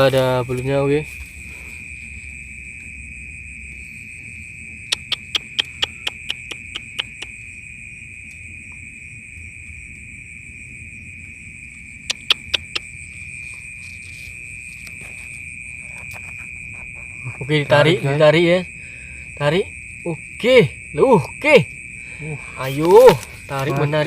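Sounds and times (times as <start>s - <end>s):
night insects chorus: 0.0s - 24.0s
sharp clicks: 4.9s - 7.3s, 12.1s - 12.9s.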